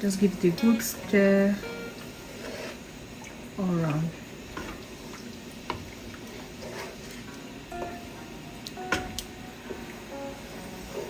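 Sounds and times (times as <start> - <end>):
spoon stirring thick stew: 5.6 - 7.4.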